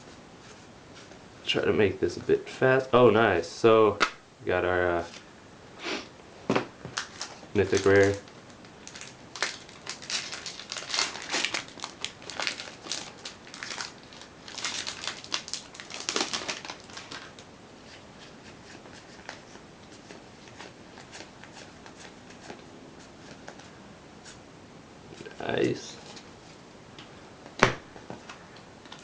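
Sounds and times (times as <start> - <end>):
cards rustling and flicking: 7.0 - 8.2.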